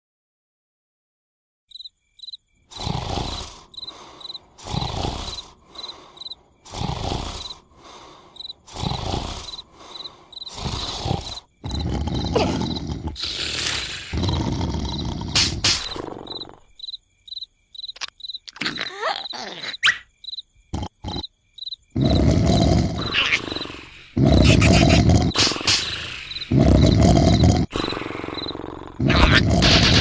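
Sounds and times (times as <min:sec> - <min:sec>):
crickets chirping: 0:01.7 - 0:30.0
cartoon snoring: 0:02.7 - 0:16.8, 0:20.7 - 0:21.3, 0:21.9 - 0:30.0.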